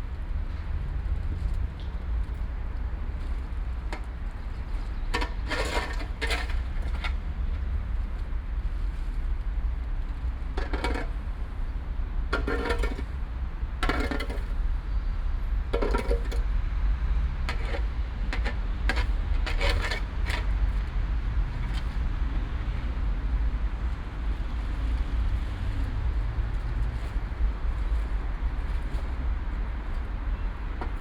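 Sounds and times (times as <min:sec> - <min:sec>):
low rumble of city traffic: 0:00.0 - 0:31.0.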